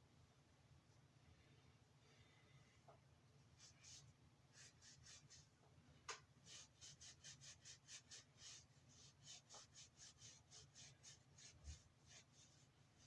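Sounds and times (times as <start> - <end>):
faint rubbing strokes: 3.5 - 5.6, 6.4 - 13.0.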